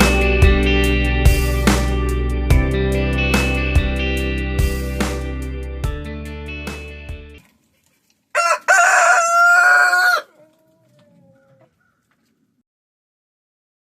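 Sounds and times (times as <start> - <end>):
guitar music: 0.0 - 7.4
rooster crowing: 8.3 - 11.9.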